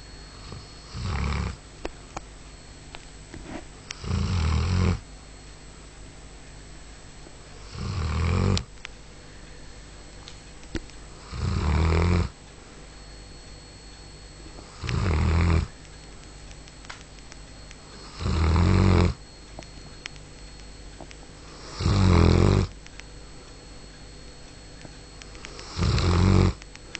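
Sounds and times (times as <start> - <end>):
dog snoring: 0.4 - 1.6, 3.9 - 5.0, 7.6 - 8.7, 11.2 - 12.4, 14.6 - 15.8, 18.0 - 19.2, 21.4 - 22.7, 25.5 - 26.6.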